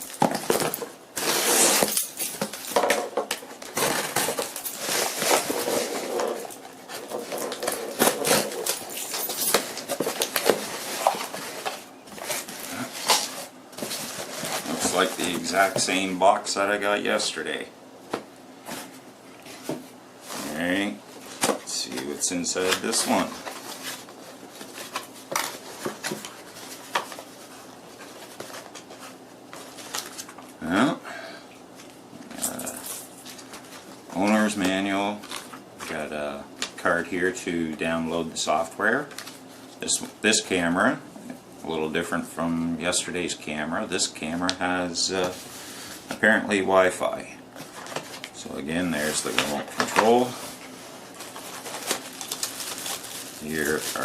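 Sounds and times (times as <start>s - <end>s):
cardboard packaging rustling: 0.0s - 16.3s, 18.6s - 30.5s, 32.6s - 36.1s, 47.6s - 54.0s
cardboard box rustling and scraping: 3.8s - 8.9s, 9.5s - 15.8s.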